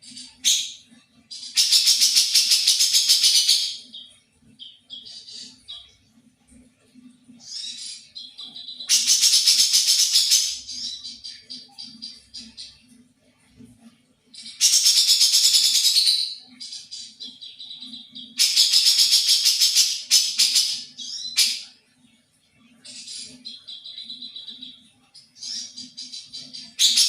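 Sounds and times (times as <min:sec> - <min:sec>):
songbird singing trills: 0:22.8 - 0:27.0.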